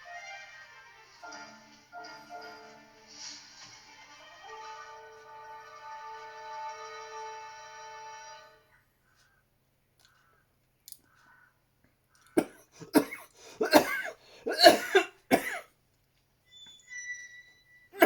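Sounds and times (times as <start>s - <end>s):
person coughing: 12.4s - 15.7s.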